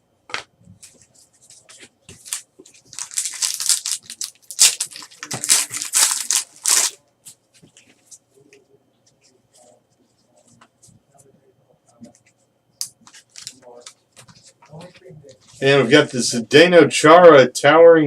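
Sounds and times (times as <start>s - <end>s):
foil wrapper tearing and crinkling: 2.2s - 7.0s, 13.1s - 13.9s.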